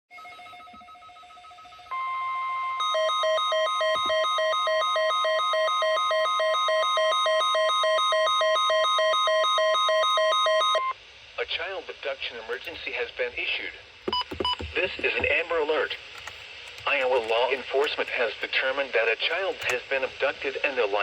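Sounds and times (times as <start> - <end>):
steady electronic alarm tone: 0.1 - 10.9
pulsing electronic beeps: 14.1 - 15.4.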